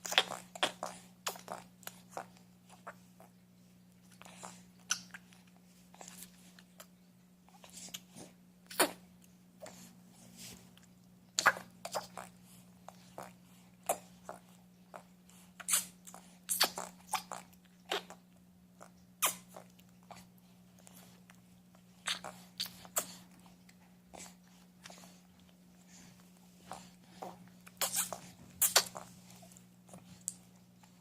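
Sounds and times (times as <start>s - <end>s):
low electrical hum: 0.0s - 31.0s
baby mouth smacks: 27.6s - 29.1s.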